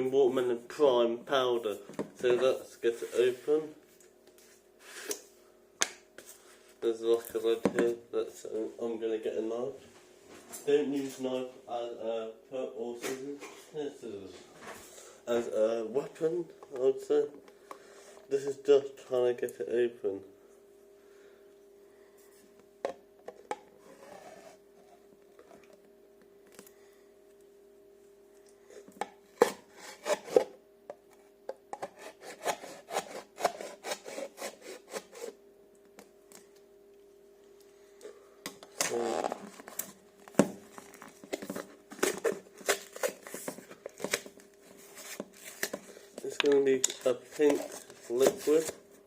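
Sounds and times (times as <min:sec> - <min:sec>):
blade scraping plastic lid: 0:29.0 - 0:30.6, 0:31.7 - 0:35.4.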